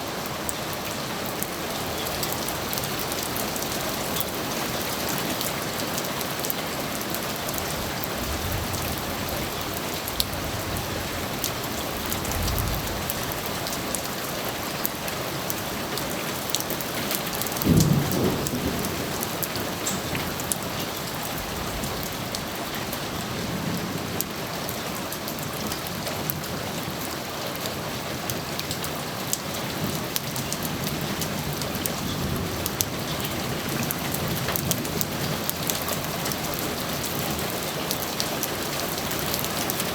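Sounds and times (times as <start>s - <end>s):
steady rain: 0.0s - 39.9s
thunder rumbling: 17.4s - 24.2s
sharp thunderclap: 17.6s - 22.0s.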